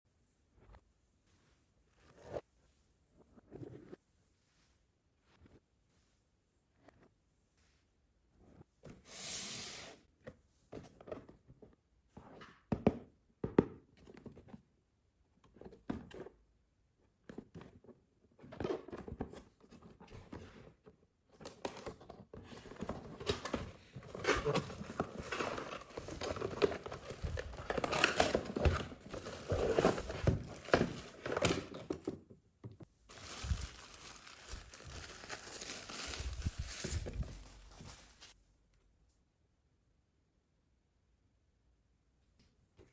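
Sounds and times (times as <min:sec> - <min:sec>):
steady packaging rustle: 0:21.4 - 0:32.2, 0:33.0 - 0:38.4
packaging tearing and crinkling: 0:33.1 - 0:38.1.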